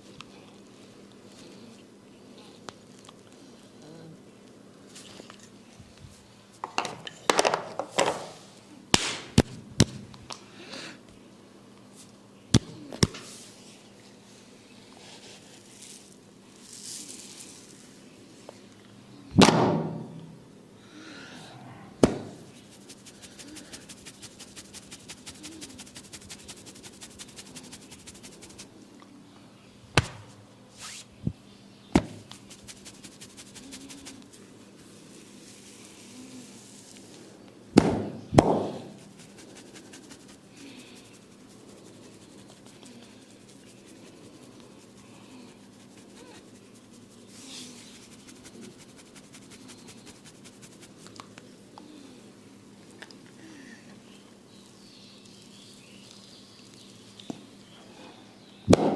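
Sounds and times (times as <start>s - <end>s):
sharp hand slaps: 8.9s - 9.9s, 22.0s - 22.4s, 30.0s - 30.3s, 37.8s - 38.8s.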